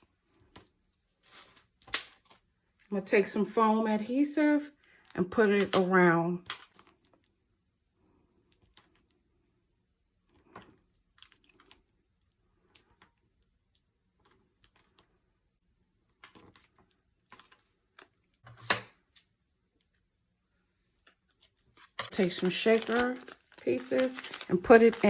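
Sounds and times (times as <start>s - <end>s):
paper rustling: 0.2s - 2.4s, 20.9s - 25.0s
small clicks and taps: 21.0s - 22.1s.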